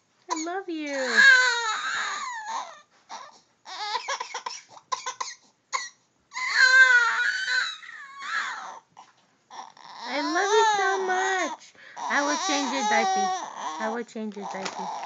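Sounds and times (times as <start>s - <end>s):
infant coughing: 0.3s - 0.6s, 3.8s - 6.0s
infant squealing cry: 0.3s - 4.5s, 6.3s - 8.8s, 9.5s - 15.0s.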